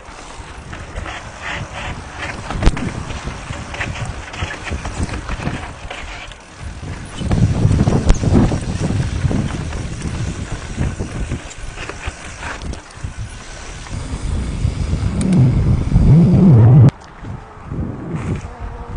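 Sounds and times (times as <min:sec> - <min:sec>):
wind buffeting microphone: 0:00.0 - 0:18.9
bike knocks and rattles: 0:00.1 - 0:14.0.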